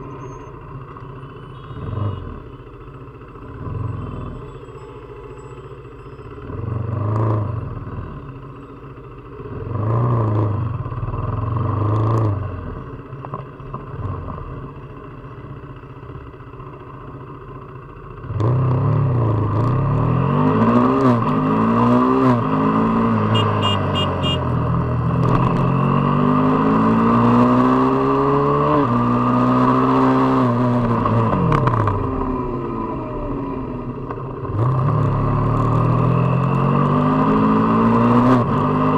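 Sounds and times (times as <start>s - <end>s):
motorcycle engine revving: 17.9s - 38.9s.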